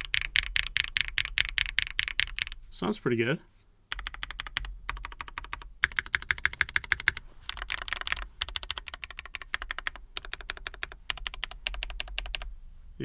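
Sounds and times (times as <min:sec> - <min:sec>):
mechanical keyboard typing: 0:00.0 - 0:02.6, 0:03.9 - 0:12.5.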